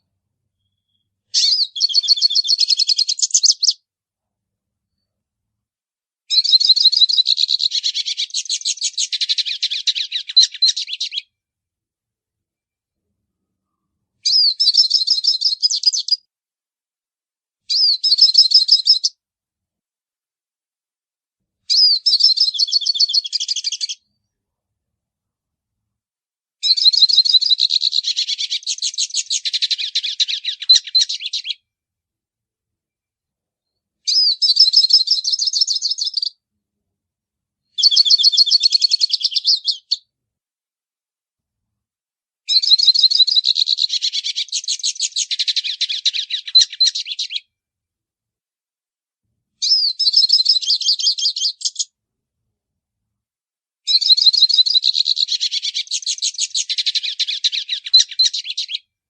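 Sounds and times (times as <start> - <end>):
bird twittering song: 0.6 - 3.8, 6.3 - 11.3, 14.2 - 16.2, 17.7 - 19.1, 21.7 - 24.2, 26.6 - 31.6, 33.7 - 36.4, 37.7 - 40.0, 42.5 - 47.5, 49.6 - 51.9, 53.9 - 58.9.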